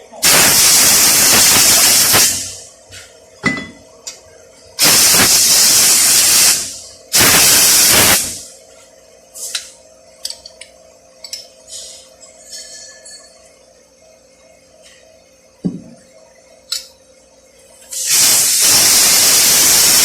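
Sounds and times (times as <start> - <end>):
compressed air blasting: 0.2 - 3.1, 4.8 - 8.5, 17.9 - 20.0.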